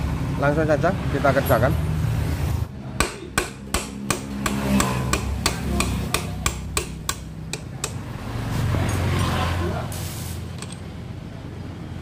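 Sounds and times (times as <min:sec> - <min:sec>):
hammer on metal: 0:02.9 - 0:08.1.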